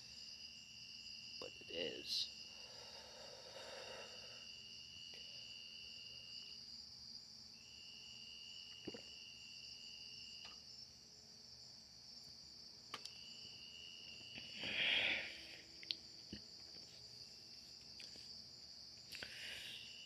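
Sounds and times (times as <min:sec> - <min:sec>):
night insects trilling: 0:00.0 - 0:20.0
faint clicks: 0:12.9 - 0:13.2.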